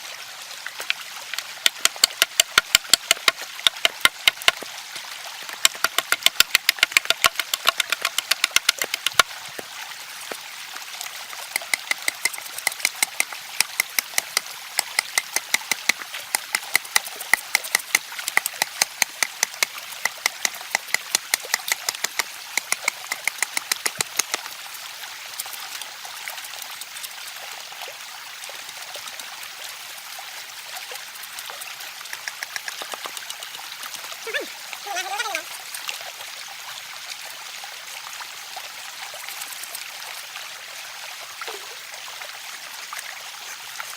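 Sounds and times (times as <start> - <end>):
blade chopping bamboo: 1.4 - 4.6, 5.5 - 9.3, 11.5 - 24.4.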